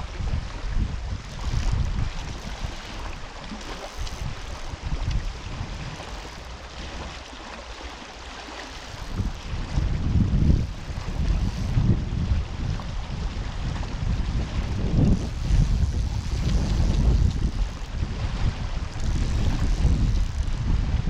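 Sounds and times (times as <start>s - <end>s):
wind buffeting microphone: 0.0s - 7.4s, 8.8s - 21.0s
river water rushing: 6.0s - 11.2s.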